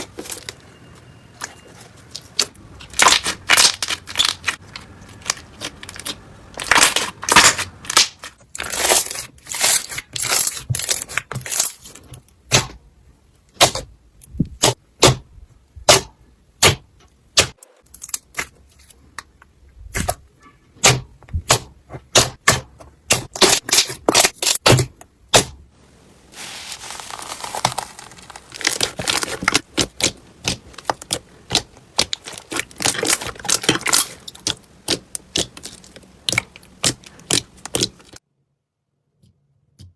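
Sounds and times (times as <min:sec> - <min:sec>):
slime crackling and popping: 0:02.1 - 0:11.9, 0:26.4 - 0:38.2.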